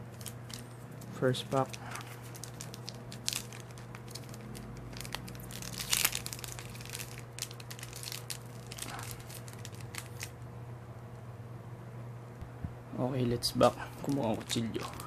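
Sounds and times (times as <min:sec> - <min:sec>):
plastic wrapper crinkling: 0:00.0 - 0:10.3, 0:13.9 - 0:15.0.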